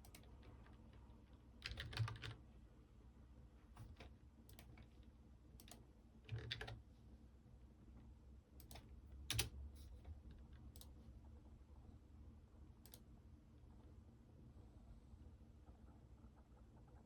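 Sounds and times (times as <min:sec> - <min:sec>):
computer keyboard keystrokes: 0:00.0 - 0:00.3, 0:01.6 - 0:02.4, 0:03.8 - 0:04.9, 0:05.6 - 0:06.8, 0:08.6 - 0:09.6.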